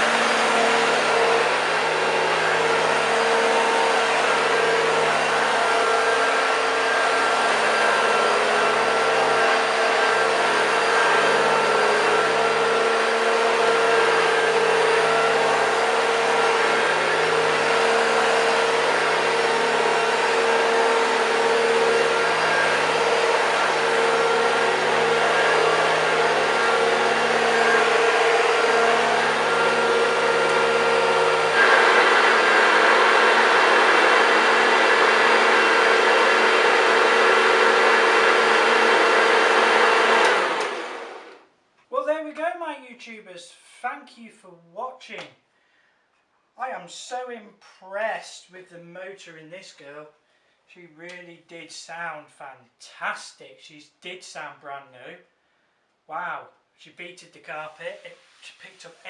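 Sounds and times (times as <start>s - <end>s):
vacuum cleaner humming: 0.0s - 41.5s, 57.8s - 59.0s.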